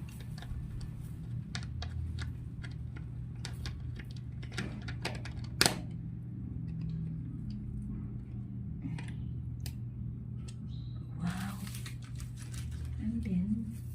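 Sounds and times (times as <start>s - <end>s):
clicks and knocks of parts: 0.0s - 6.0s
steady low hum: 0.0s - 13.9s.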